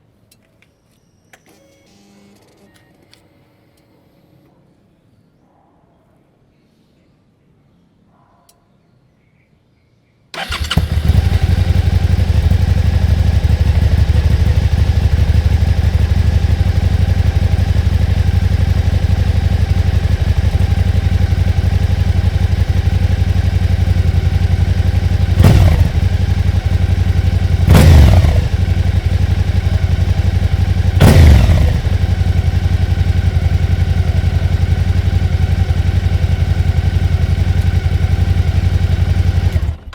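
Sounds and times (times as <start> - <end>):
motorcycle engine idling: 10.4 - 39.9
motorcycle engine revving: 10.4 - 39.9.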